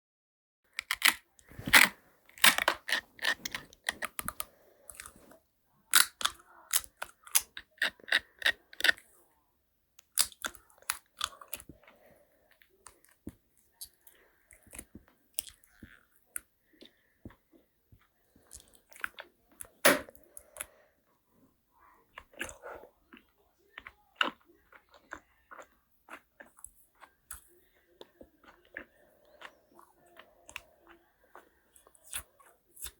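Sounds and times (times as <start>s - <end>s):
crisp bites and chewing: 0.7s - 5.3s, 10.1s - 11.9s.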